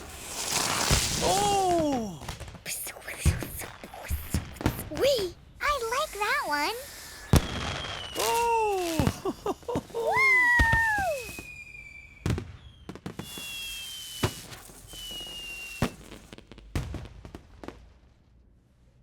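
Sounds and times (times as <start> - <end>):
firework whistles: 0.0 - 2.4, 4.6 - 16.4
firework pops and cracks: 0.0 - 18.3.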